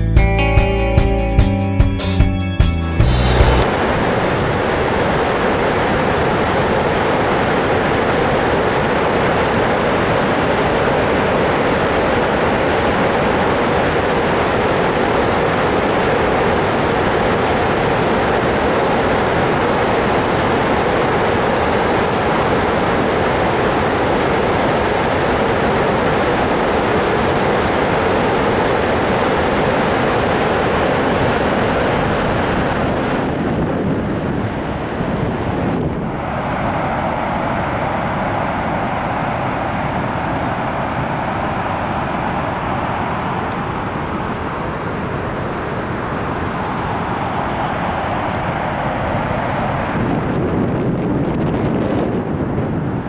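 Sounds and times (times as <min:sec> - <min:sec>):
water rushing through dam outlet: 0:03.6 - 0:50.9.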